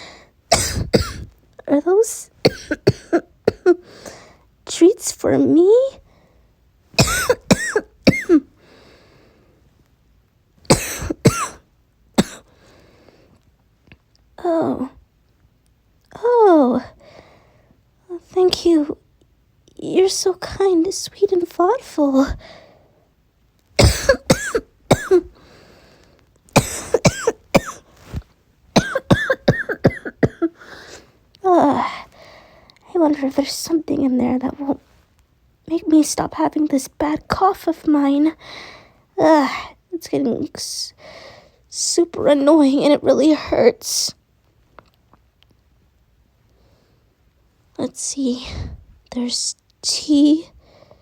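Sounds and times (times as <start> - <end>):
person coughing: 0.5 - 1.3, 2.4 - 3.8, 7.0 - 8.4, 10.7 - 11.6, 12.2 - 12.5, 23.8 - 25.3, 26.6 - 28.2, 28.8 - 30.7
faint breathing: 8.6 - 9.7, 12.5 - 13.4, 17.0 - 17.8, 22.4 - 23.1, 25.3 - 26.3, 30.6 - 31.3, 31.9 - 32.8, 38.4 - 39.1, 50.6 - 51.0.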